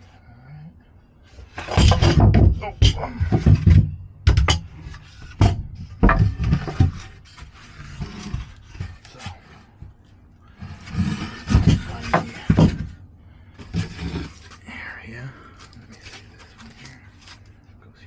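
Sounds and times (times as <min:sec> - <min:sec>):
wooden and metal parts clattering: 0:01.3 - 0:14.6
rubbing and scraping: 0:01.3 - 0:14.8, 0:15.5 - 0:17.6.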